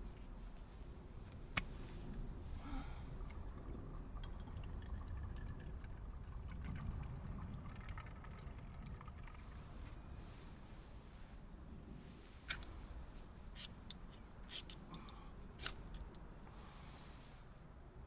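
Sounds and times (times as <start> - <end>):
liquid being poured: 3.1 - 9.8.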